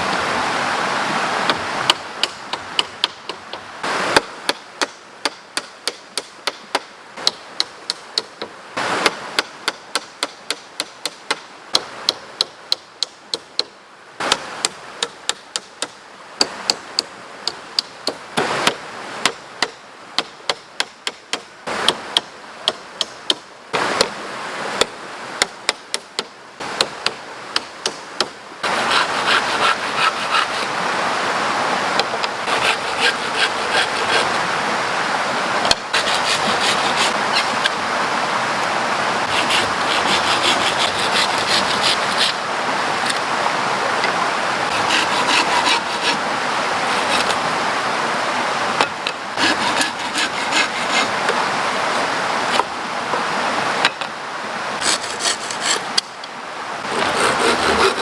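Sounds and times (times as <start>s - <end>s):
tool strikes on wood: 1.5s - 3.4s, 4.2s - 13.7s.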